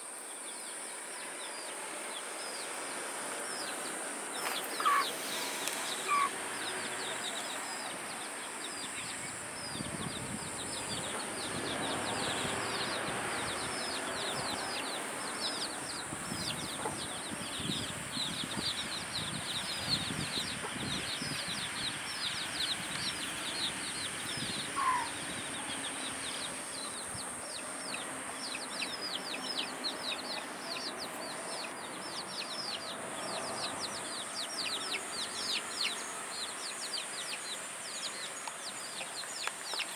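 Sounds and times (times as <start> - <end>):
steady high hiss: 0.0 - 39.9
chicks peeping: 1.2 - 39.9
lower chicken calls: 4.4 - 8.0, 24.2 - 25.7.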